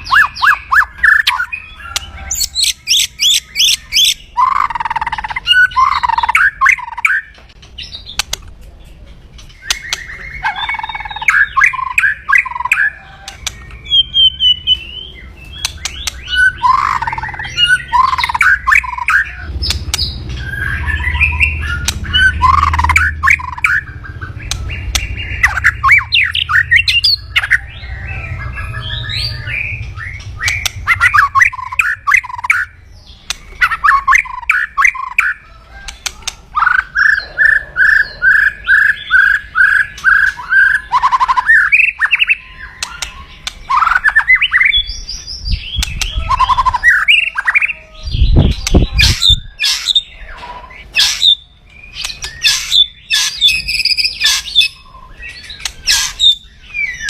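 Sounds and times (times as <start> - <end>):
bird giving harsh crackling call: 9.4 - 13.8, 45.8 - 54.8, 55.4 - 57.0.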